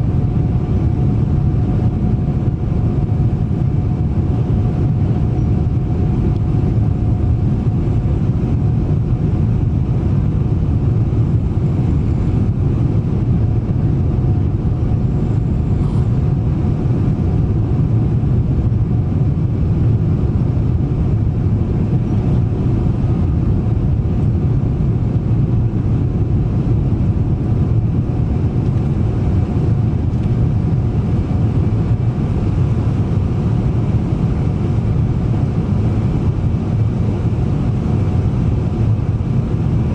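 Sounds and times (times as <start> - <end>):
jet engines roaring during takeoff: 0.0 - 39.9.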